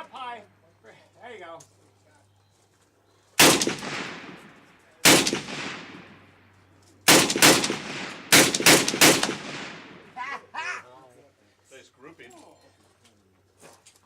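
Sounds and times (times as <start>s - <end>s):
machine gun firing bursts: 3.4s - 6.0s, 7.1s - 10.1s
gunshot echo: 3.4s - 6.2s, 7.1s - 10.2s.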